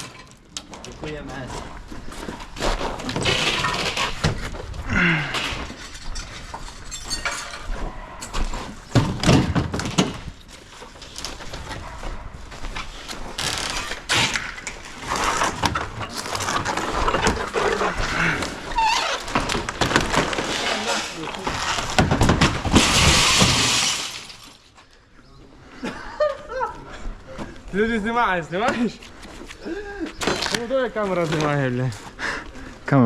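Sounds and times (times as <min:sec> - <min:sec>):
demolition knocking and crashes: 0:02.5 - 0:10.5, 0:14.2 - 0:24.6.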